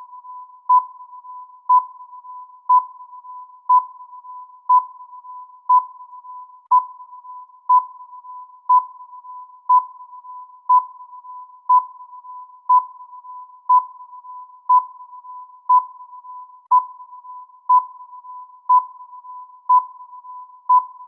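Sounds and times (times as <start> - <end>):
electronic timer beeps: 17.7 - 21.0.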